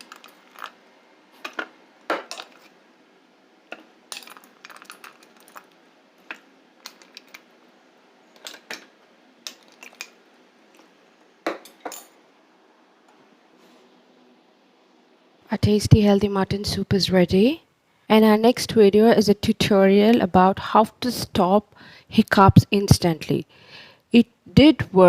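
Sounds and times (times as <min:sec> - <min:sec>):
metal utensils clinking: 0:00.0 - 0:00.8, 0:01.4 - 0:02.7, 0:03.7 - 0:07.4.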